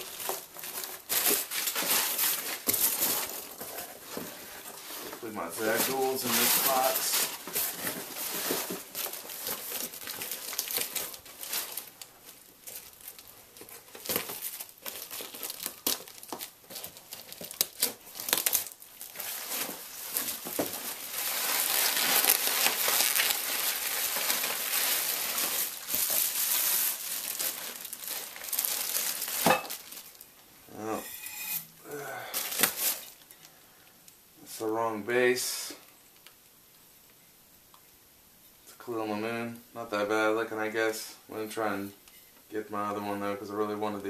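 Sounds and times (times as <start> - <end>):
newspaper crumpling and tearing: 0.0 - 30.3, 32.0 - 33.4.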